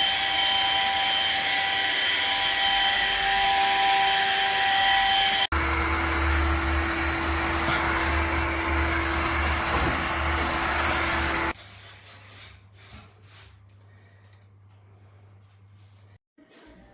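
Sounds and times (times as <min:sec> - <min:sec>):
wet-dry vacuum running: 0:00.0 - 0:11.6.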